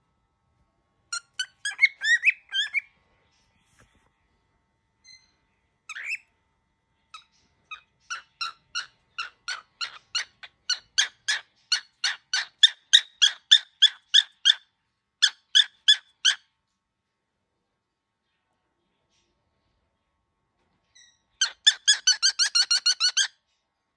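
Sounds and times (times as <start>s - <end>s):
cockatiel squawking: 1.2s - 2.8s, 5.9s - 6.2s, 7.2s - 14.6s, 15.2s - 16.4s, 21.4s - 23.3s.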